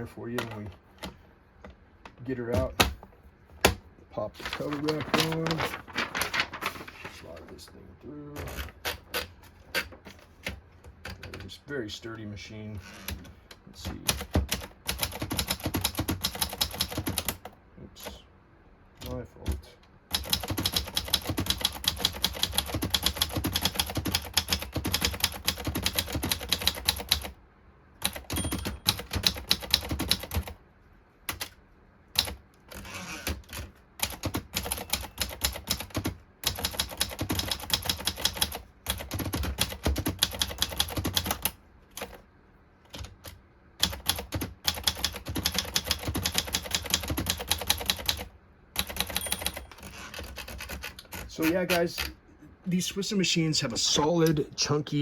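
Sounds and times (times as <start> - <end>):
manual typewriter typing: 4.4 - 6.8, 13.8 - 18.2, 19.0 - 27.4, 28.0 - 30.6, 32.1 - 42.2, 42.9 - 52.1.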